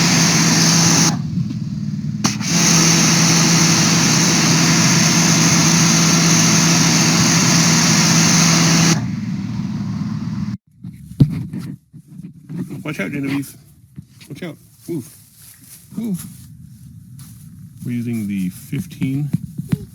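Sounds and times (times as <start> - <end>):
water spray hissing: 0.0 - 1.3, 2.2 - 10.6
pressure washer pump humming: 0.0 - 10.6.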